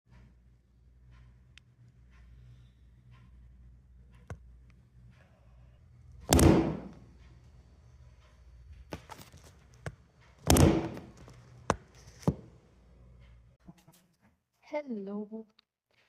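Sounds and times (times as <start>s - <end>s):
heavy thuds: 6.2s - 7.1s, 10.4s - 11.3s.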